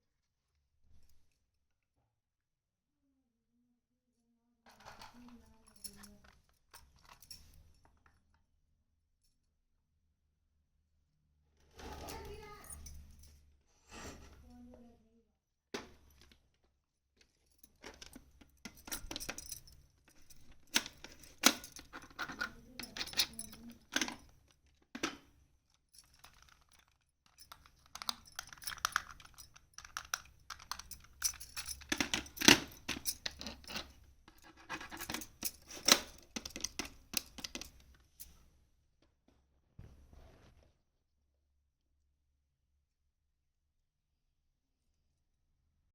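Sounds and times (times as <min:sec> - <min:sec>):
plastic toy pieces clattering: 0:26.0 - 0:34.0, 0:34.6 - 0:37.7.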